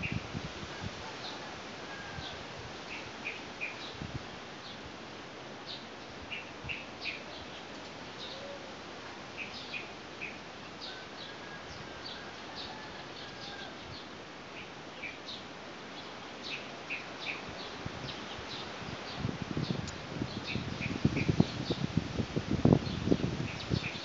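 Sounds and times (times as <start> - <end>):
wind rushing: 18.8 - 24.0.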